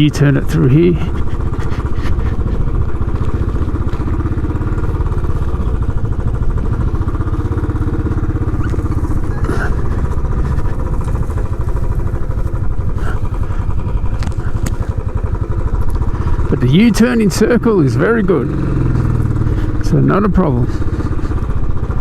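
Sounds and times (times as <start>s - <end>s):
motorcycle engine thumping: 0.0s - 22.0s.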